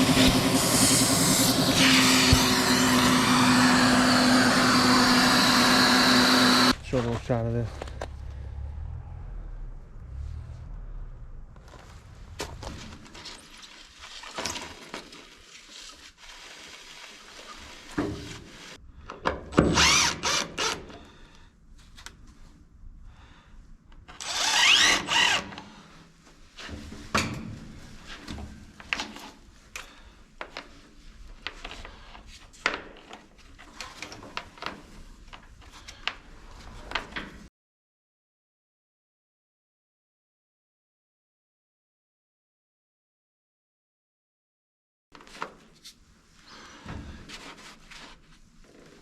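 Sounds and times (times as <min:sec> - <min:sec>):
power drill spinning up: 0:00.0 - 0:06.8, 0:19.7 - 0:20.8, 0:24.1 - 0:25.6.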